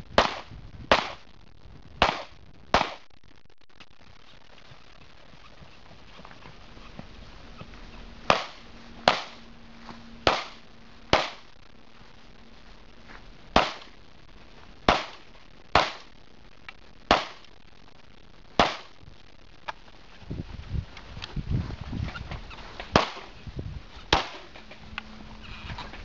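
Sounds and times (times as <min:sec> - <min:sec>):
loud pistol shots: 0:00.2 - 0:01.2, 0:02.0 - 0:03.0, 0:08.3 - 0:09.4, 0:10.2 - 0:11.5, 0:13.6 - 0:13.9, 0:14.9 - 0:15.2, 0:15.8 - 0:16.1, 0:17.1 - 0:17.4, 0:18.6 - 0:18.9, 0:22.9 - 0:23.2.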